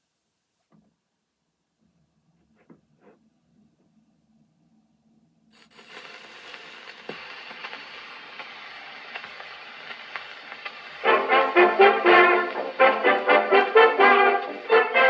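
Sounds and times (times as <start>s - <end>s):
record crackle and hiss: 5.5s - 15.0s
brass band playing: 11.0s - 15.0s.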